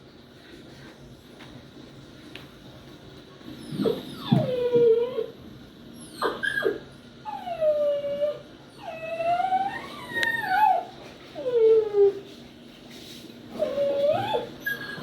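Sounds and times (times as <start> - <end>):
puppy whining: 3.5 - 12.3, 13.5 - 15.0
puppy yelps: 6.0 - 10.9.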